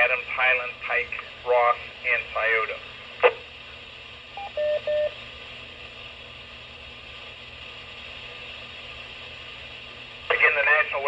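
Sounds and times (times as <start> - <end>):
radio hiss: 0.0 - 3.6, 10.2 - 11.0
two-way radio beeps: 4.4 - 5.1.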